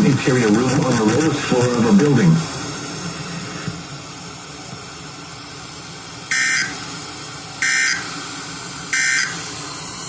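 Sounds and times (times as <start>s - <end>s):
radio background hiss: 0.0s - 4.0s
digital data tone bursts: 9.0s - 9.4s.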